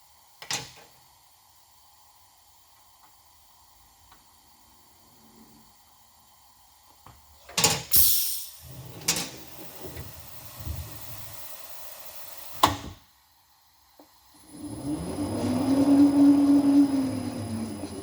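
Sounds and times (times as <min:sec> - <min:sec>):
motor spinning up: 0:14.4 - 0:18.0.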